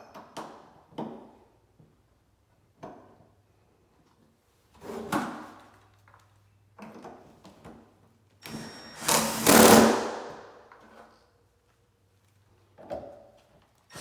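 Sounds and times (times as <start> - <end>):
cordless drill driving screw: 8.5 - 10.4.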